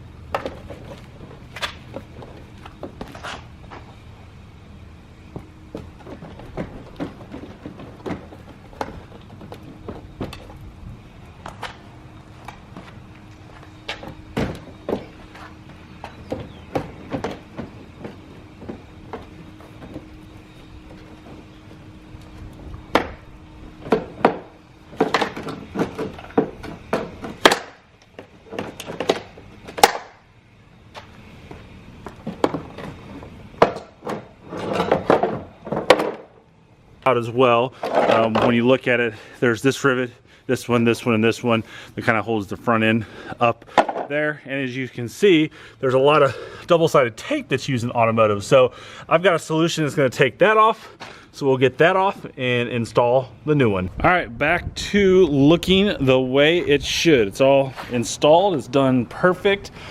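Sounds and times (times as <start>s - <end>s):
faint steady hum: 0.0s - 59.9s
hand tools clicking and clunking: 0.3s - 4.0s, 5.3s - 30.2s, 30.9s - 39.3s, 43.0s - 44.2s.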